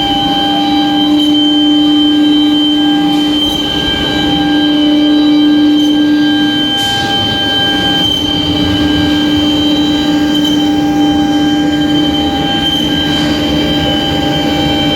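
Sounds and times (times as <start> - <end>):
noisy cutting bed: 0.0 - 14.9
router spindle whine: 0.0 - 14.9.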